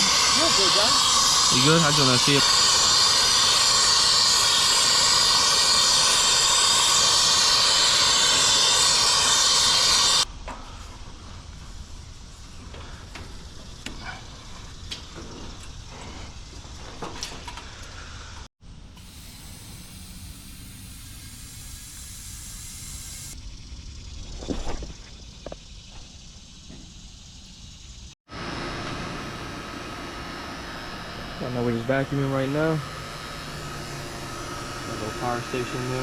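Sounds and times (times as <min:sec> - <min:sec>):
torch flame hissing: 0:00.0 - 0:10.3, 0:18.9 - 0:23.4, 0:29.2 - 0:36.0.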